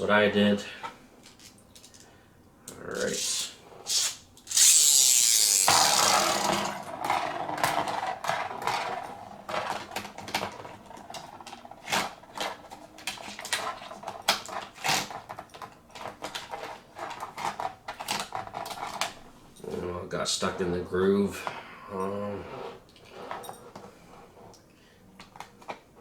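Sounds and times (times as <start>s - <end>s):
spinning toy clattering in arena: 2.9s - 19.0s
ripcord zipping whir: 3.0s - 7.9s
plastic clicks and rattles: 5.6s - 19.2s.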